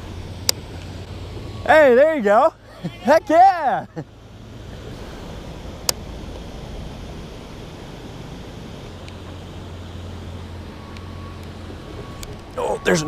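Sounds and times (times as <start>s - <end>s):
low steady hum: 0.0s - 13.0s
river water rushing: 0.0s - 13.0s
wind on microphone: 4.6s - 12.6s.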